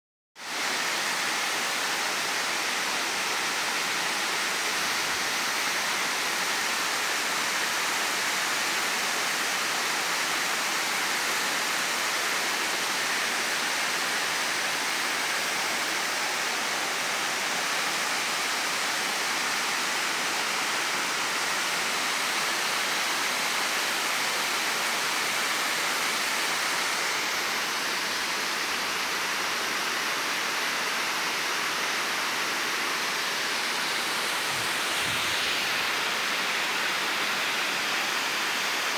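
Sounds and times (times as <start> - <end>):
waterfall rushing: 12.0 - 38.9.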